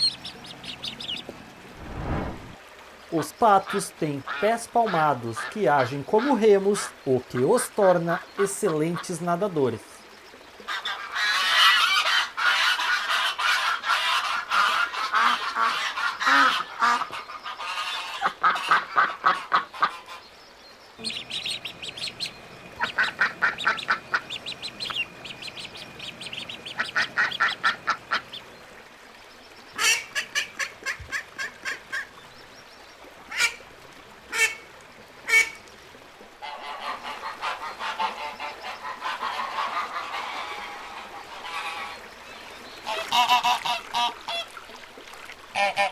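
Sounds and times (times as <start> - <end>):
ducks calling: 0.0 - 1.6, 10.6 - 20.3, 21.0 - 28.6, 29.4 - 32.2, 33.3 - 33.6, 34.3 - 35.6, 36.4 - 44.5, 45.6 - 45.9.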